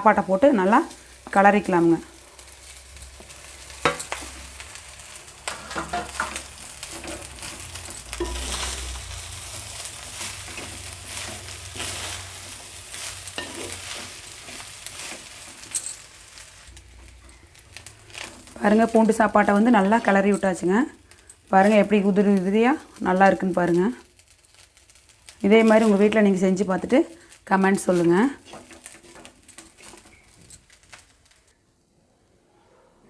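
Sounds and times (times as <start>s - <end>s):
food sizzling in a pan: 0.0s - 31.5s
utensil scraping a pan: 5.4s - 16.1s, 27.8s - 30.8s.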